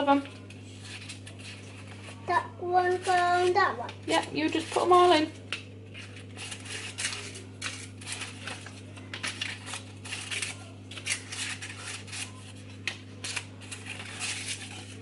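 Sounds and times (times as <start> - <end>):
paper cupcake cases crinkling: 0.0 - 15.0.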